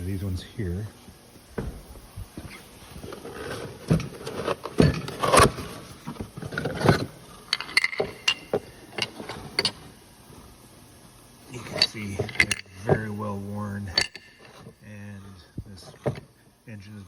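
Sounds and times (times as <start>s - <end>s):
metal engine parts clinking: 3.0s - 10.0s, 11.5s - 15.0s, 15.8s - 16.4s.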